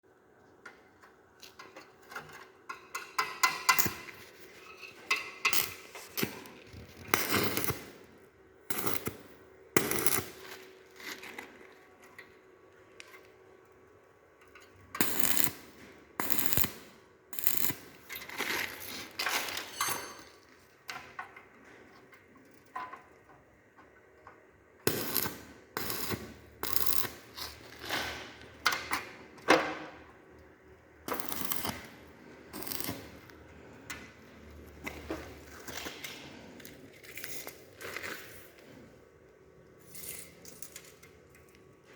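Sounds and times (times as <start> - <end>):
arc welding crackling: 2.8 - 11.7, 14.7 - 19.2, 24.8 - 29.0, 31.0 - 33.4.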